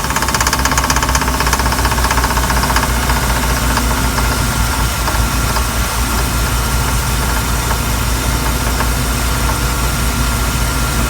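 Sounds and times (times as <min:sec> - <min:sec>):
boat engine running: 0:00.0 - 0:11.0.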